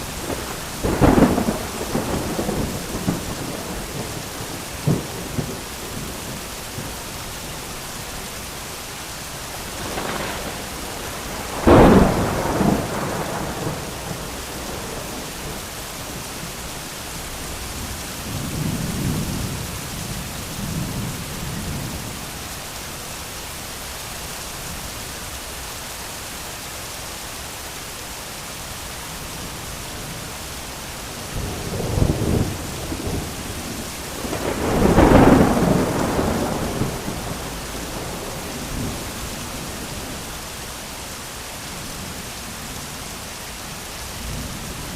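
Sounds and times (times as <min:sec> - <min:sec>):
thunder rolling: 0:00.0 - 0:07.0, 0:09.6 - 0:16.6, 0:31.2 - 0:40.3
heavy rain falling: 0:00.0 - 0:44.9.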